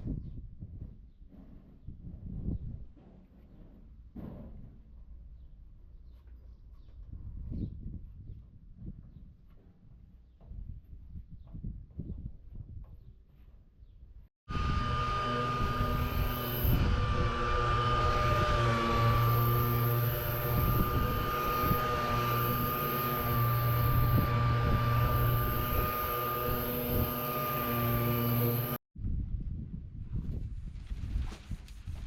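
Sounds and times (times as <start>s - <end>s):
low hum: 14.5s - 28.8s
machine running with high whine: 14.5s - 28.8s.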